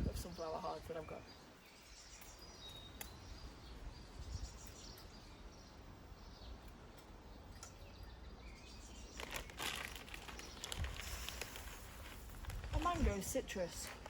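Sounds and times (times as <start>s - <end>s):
low wind rumble: 0.0s - 14.0s
small birds chirping: 0.0s - 14.0s
bird seed bag rustling: 8.8s - 14.0s.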